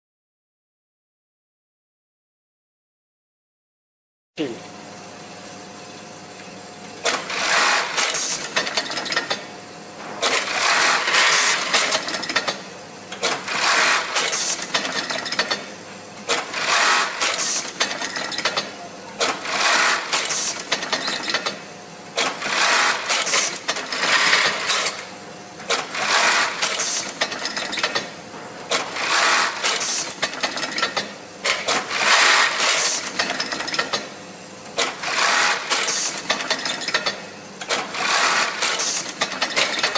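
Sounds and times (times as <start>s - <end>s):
industrial sewing machine running: 7.0s - 9.4s, 10.2s - 15.6s, 16.2s - 21.6s, 22.2s - 28.0s, 28.7s - 39.9s.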